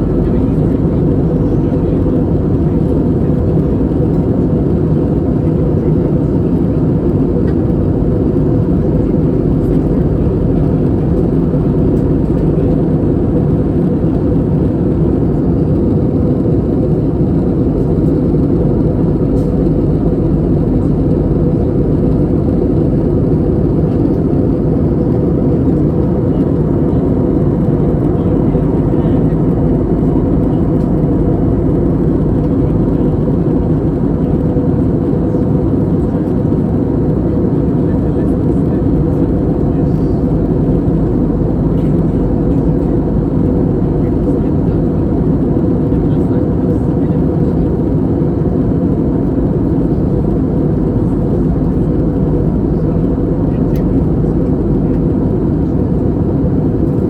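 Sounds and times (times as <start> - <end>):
aircraft cabin engine and airflow noise: 0.0 - 57.0.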